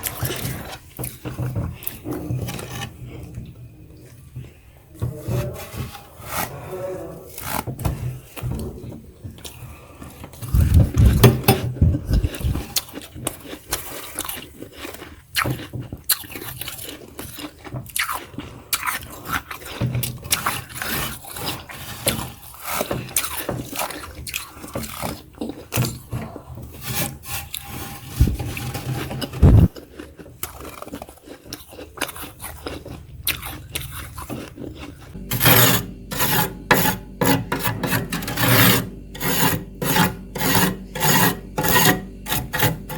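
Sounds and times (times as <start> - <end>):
freezer frost being scraped: 0.0 - 3.2, 5.2 - 8.4, 19.6 - 25.2, 26.6 - 31.0, 32.0 - 42.9.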